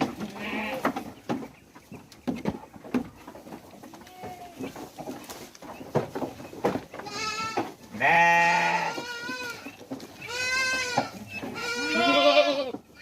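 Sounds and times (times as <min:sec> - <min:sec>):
goats bleating: 0:00.1 - 0:01.0, 0:03.9 - 0:04.7, 0:07.0 - 0:13.0.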